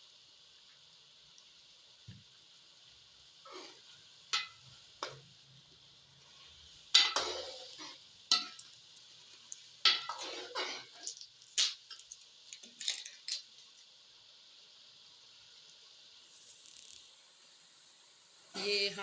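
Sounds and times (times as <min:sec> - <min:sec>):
faint sizzle: 0:00.0 - 0:19.0
spoon scraping a pot: 0:03.5 - 0:03.8, 0:09.9 - 0:11.2.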